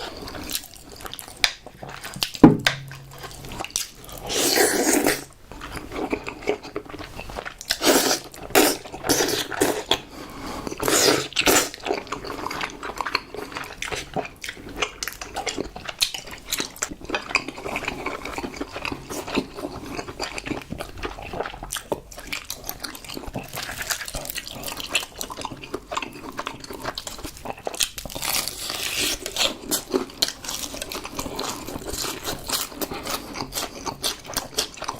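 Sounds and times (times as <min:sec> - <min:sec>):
chewing with small crackles: 0:00.0 - 0:34.9
crunching bites of fried chicken: 0:20.2 - 0:34.9.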